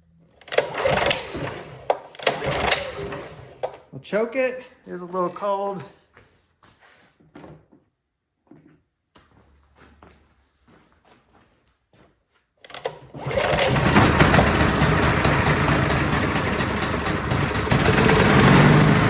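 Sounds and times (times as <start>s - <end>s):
generator engine starting and running: 0.5s - 3.8s, 12.7s - 19.0s.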